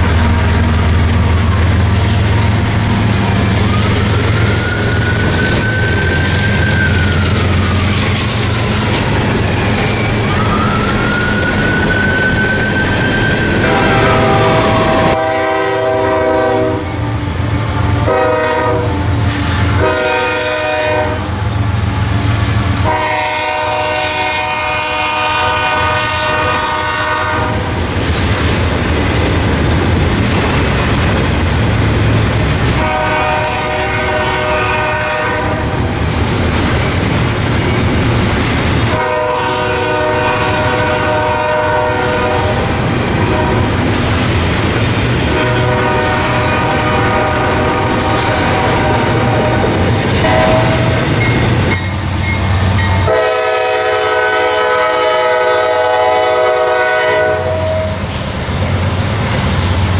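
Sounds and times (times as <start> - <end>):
locomotive air horn blasts: 0.0 - 3.2, 13.5 - 21.4, 22.8 - 27.6, 32.6 - 35.7, 38.9 - 43.8, 45.3 - 51.4, 52.9 - 58.0
passing train rumble: 0.0 - 59.9.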